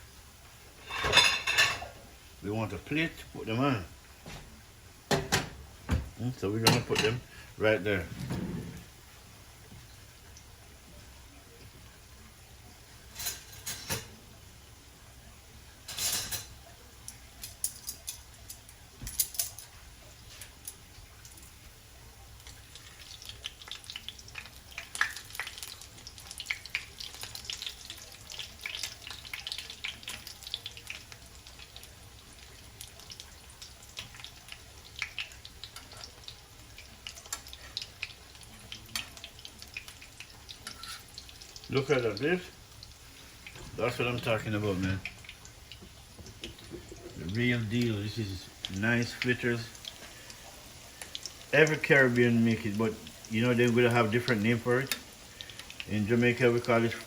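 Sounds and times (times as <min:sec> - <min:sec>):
food frying in hot oil: 0:00.0 - 0:57.0.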